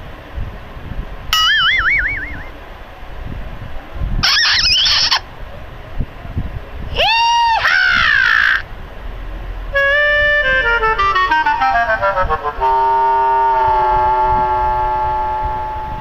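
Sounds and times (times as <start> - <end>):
descending run of notes: 1.3 - 2.6, 9.5 - 16.0
swooping comic tone: 1.4 - 2.6, 4.2 - 5.2, 9.8 - 16.0
horn-like blare: 9.7 - 16.0.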